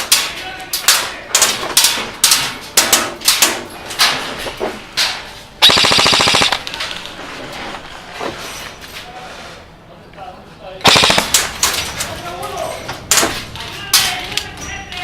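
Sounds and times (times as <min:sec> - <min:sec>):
airsoft gun full-auto burst: 0:05.6 - 0:06.7, 0:10.8 - 0:11.5
airsoft gun single shots: 0:10.8 - 0:11.5.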